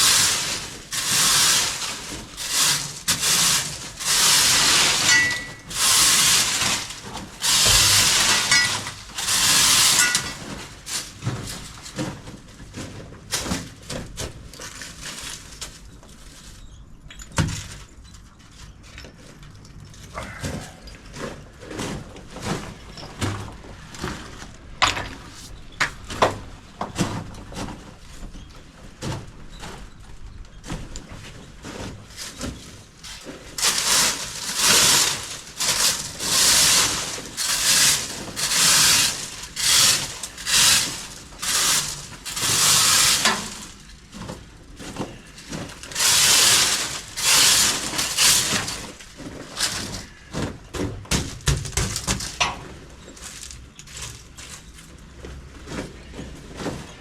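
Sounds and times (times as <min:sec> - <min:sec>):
paint sprayer hissing: 0:07.4 - 0:10.3
handling knocks and clicks: 0:18.8 - 0:27.3.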